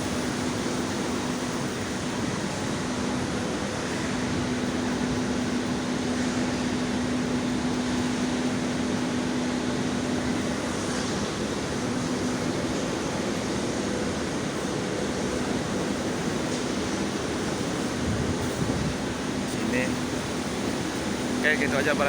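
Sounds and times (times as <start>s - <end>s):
low machine hum: 0.0s - 22.0s
wind blowing over microphone: 17.9s - 20.0s.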